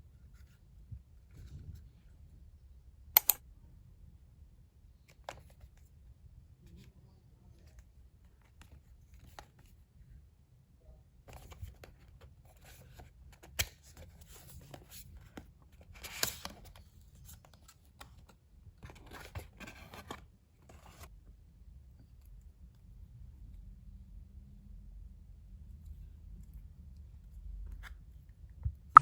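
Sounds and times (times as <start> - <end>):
sharp click: 3.2 - 3.4.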